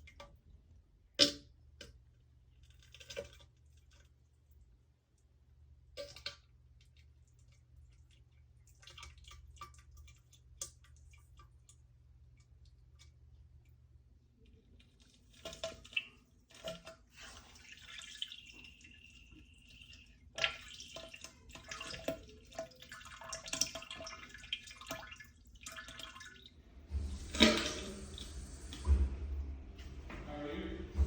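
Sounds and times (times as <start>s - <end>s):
diarrhea splashing into toilet water: 14.7s - 31.0s
toilet flushing: 17.0s - 31.0s.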